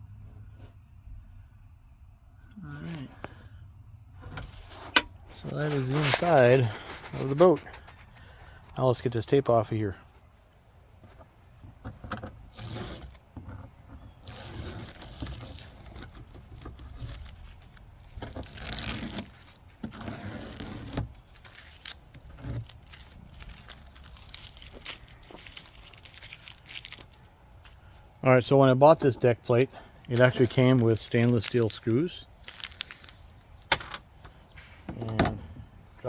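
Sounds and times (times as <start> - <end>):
tape peeling off: 12.2 - 28.0, 30.1 - 33.8.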